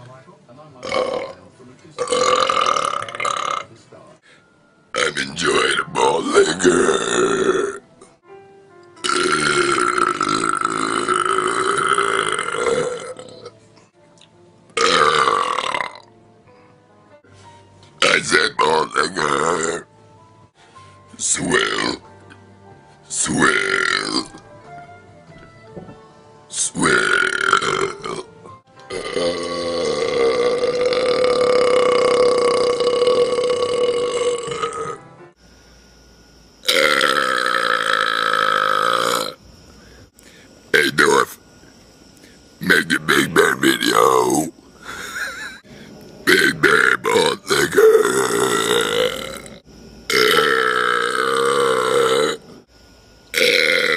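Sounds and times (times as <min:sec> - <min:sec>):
man belching loudly: 0:00.8 - 0:01.4, 0:02.0 - 0:03.7, 0:05.0 - 0:07.8, 0:09.0 - 0:13.6, 0:14.8 - 0:16.1, 0:18.0 - 0:19.9, 0:21.5 - 0:22.0, 0:23.2 - 0:24.4, 0:26.7 - 0:28.3, 0:28.9 - 0:35.0, 0:36.6 - 0:39.4, 0:42.6 - 0:45.6, 0:46.2 - 0:52.6, 0:53.3 - 0:53.9.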